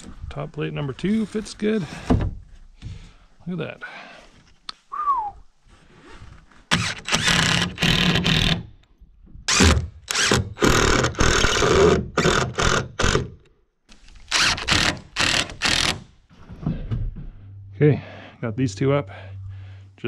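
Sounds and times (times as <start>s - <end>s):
power drill driving screws: 6.7s - 8.7s, 9.5s - 13.4s, 14.0s - 16.1s.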